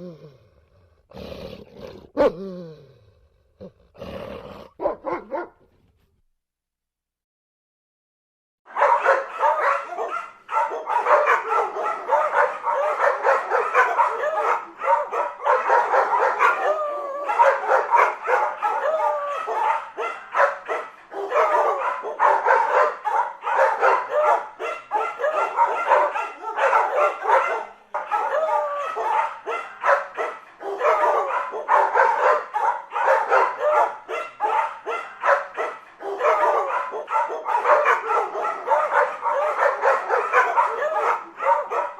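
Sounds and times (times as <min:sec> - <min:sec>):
dog whining: 0:01.1 - 0:03.0
dog barking and yipping: 0:04.7 - 0:05.6, 0:08.7 - 0:41.9.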